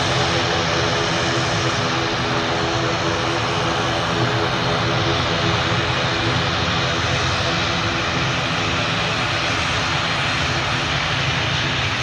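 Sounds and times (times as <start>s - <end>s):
aircraft engines running: 0.0s - 12.0s.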